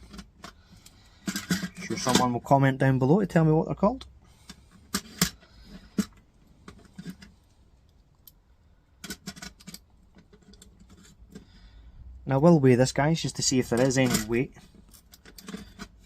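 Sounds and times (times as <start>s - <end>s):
metal parts clicking and tapping: 0.0s - 2.3s, 4.0s - 8.4s, 9.0s - 11.5s, 13.6s - 16.0s.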